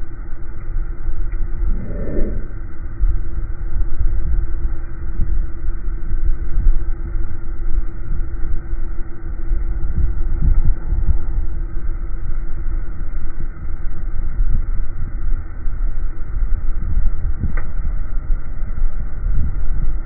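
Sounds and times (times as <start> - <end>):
low fan rumble: 0.0 - 14.6.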